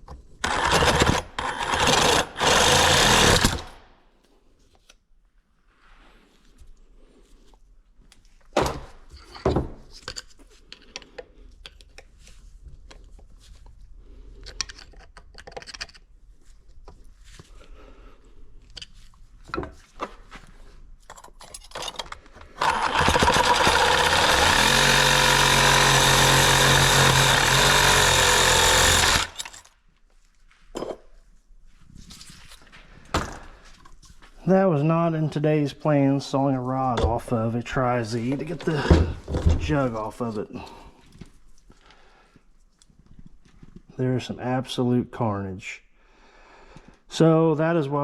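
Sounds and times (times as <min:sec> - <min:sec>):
power saw cutting metal: 0:00.4 - 0:03.8, 0:22.6 - 0:29.7
tool clatter: 0:21.0 - 0:29.7.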